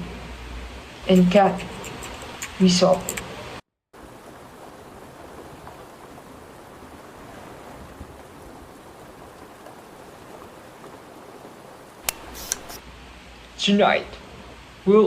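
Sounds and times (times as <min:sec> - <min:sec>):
rushing water hiss: 0:00.0 - 0:15.0
sharp click: 0:12.1 - 0:12.8.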